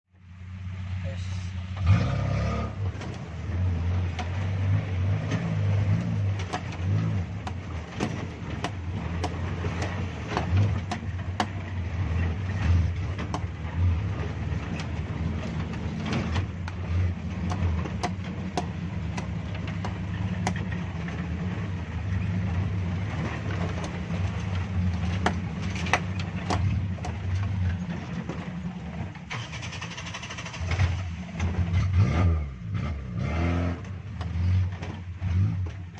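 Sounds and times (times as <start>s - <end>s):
car engine running at low revs: 0.1s - 35.9s
knocks and clatter over rocks: 2.8s - 29.3s, 33.9s - 35.9s.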